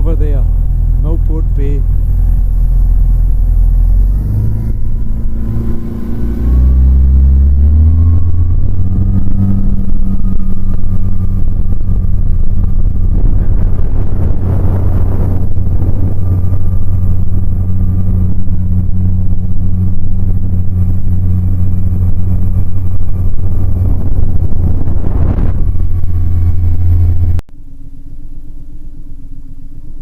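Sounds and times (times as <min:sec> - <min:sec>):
rushing air noise: 0:00.0 - 0:27.4
vehicle engine humming: 0:00.0 - 0:30.0.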